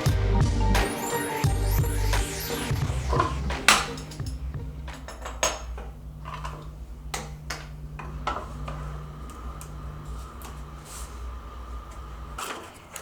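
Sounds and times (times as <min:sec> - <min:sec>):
steady low hum: 0:00.4 - 0:13.0
tools and wooden pieces clinking: 0:02.6 - 0:11.3.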